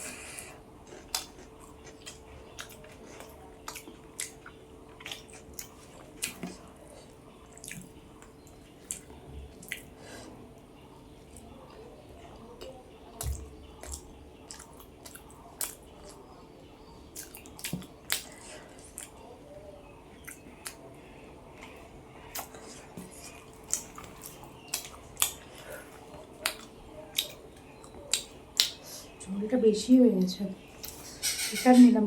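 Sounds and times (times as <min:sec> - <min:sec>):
faint steady hum: 0:00.0 - 0:32.0
wet chewing mouth clicks: 0:00.9 - 0:06.6, 0:26.4 - 0:28.8.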